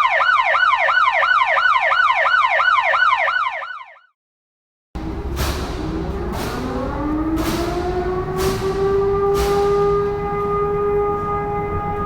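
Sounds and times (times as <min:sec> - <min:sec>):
electronic siren yelping: 0:00.0 - 0:04.1, 0:07.9 - 0:12.0
loud rumbling with thumps: 0:05.0 - 0:12.0.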